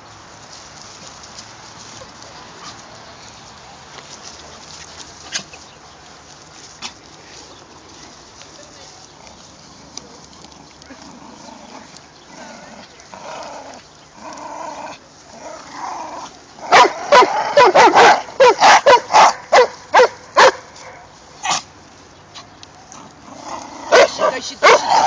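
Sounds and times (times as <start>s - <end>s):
dog barking: 16.7s - 21.0s, 23.9s - 25.0s.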